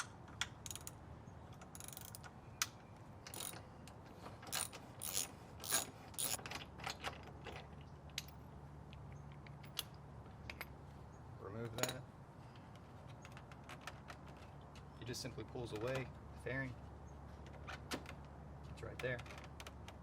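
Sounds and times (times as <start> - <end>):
hand ratchet clicking: 0.0 - 1.0, 3.3 - 3.6, 4.5 - 6.5.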